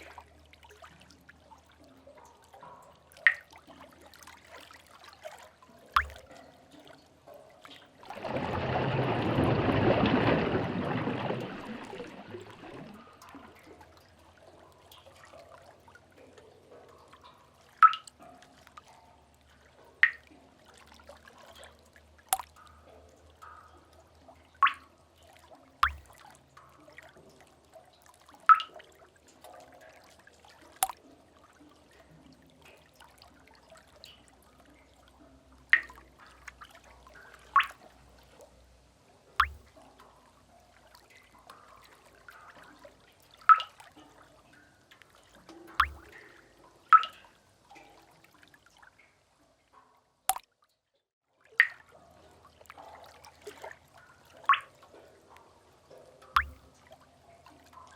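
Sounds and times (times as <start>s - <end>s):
water drips plinking: 0.0s - 38.4s, 39.4s - 49.2s, 50.3s - 50.6s, 51.5s - 57.9s
seawater surging: 8.0s - 13.2s.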